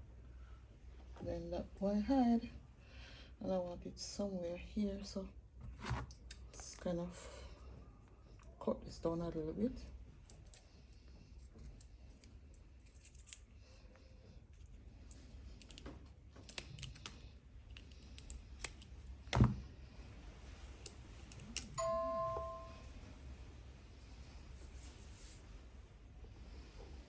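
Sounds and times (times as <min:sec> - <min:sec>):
two-note electronic chime: 0:21.8 - 0:22.9.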